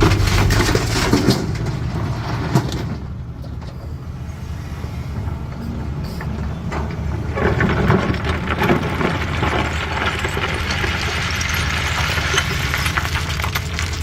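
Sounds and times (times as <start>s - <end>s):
stones scraping against steel bucket: 0.0s - 1.8s
excavator diesel engine running: 0.0s - 14.0s.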